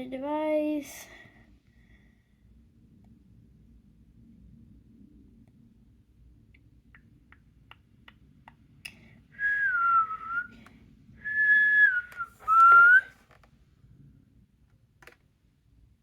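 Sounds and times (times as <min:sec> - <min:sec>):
person whistling short notes: 0:09.4 - 0:10.5, 0:11.2 - 0:13.1.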